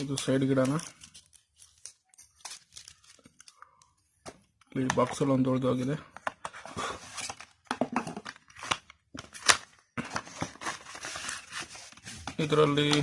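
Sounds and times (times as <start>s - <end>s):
cardboard and paper rustling: 8.2s - 13.0s.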